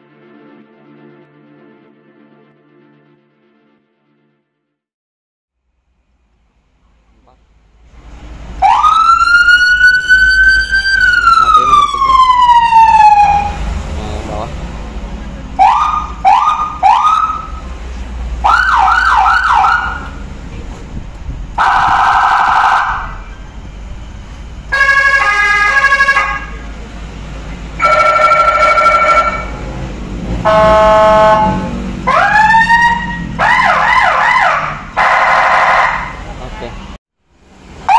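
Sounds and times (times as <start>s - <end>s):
electronic vehicle siren: 8.6s - 13.7s, 15.6s - 17.7s, 18.4s - 20.3s, 21.6s - 26.6s, 27.8s - 29.6s, 30.4s - 36.2s.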